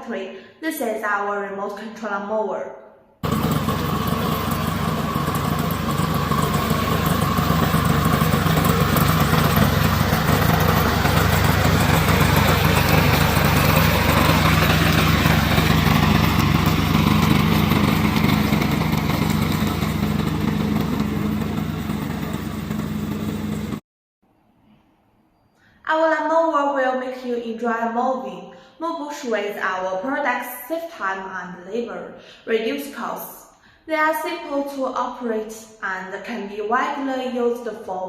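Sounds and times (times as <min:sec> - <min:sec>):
mower engine drone: 0:03.2 - 0:23.8.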